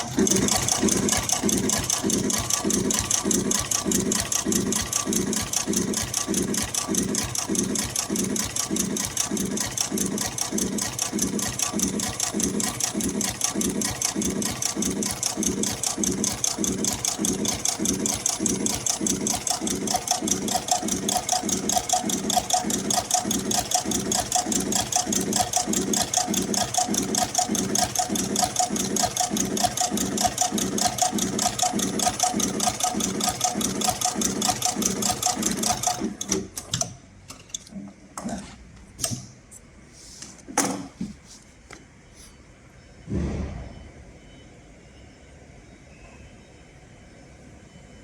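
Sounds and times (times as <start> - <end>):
industrial sewing machine stitching: 0.0 - 37.0.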